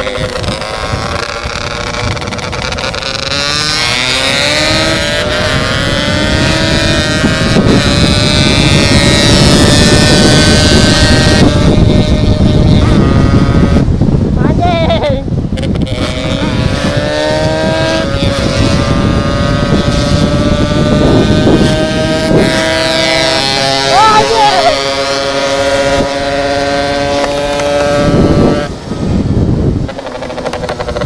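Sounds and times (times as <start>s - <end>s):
motorcycle engine at speed: 0.0s - 31.0s.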